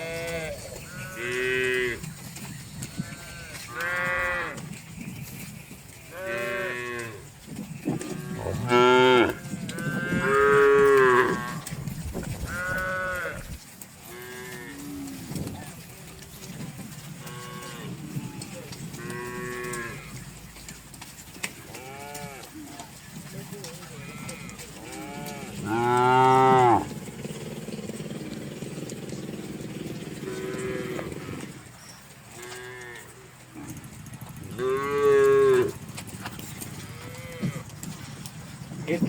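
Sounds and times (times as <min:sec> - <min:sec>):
cattle mooing: 0:00.0 - 0:02.1, 0:02.9 - 0:04.7, 0:06.1 - 0:11.8, 0:12.5 - 0:15.4, 0:17.2 - 0:20.3, 0:21.7 - 0:22.7, 0:23.7 - 0:31.6, 0:32.4 - 0:33.8, 0:34.6 - 0:35.8, 0:36.8 - 0:37.8.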